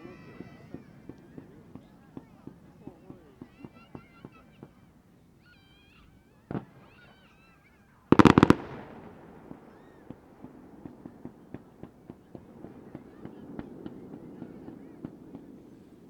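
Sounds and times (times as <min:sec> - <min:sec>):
crackling pops: 0:08.1 - 0:12.5
fireworks bangs: 0:08.1 - 0:16.0.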